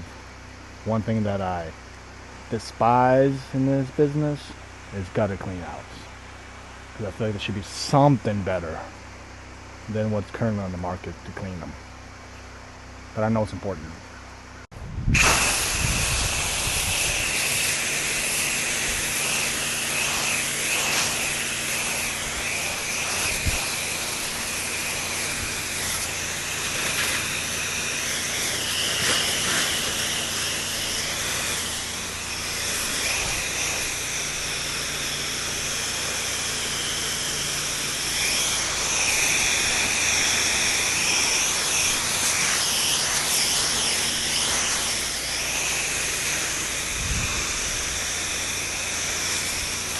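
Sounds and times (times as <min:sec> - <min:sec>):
engine and pump hum: 0:00.0 - 0:49.9
pressure washer jet hissing: 0:15.1 - 0:49.9.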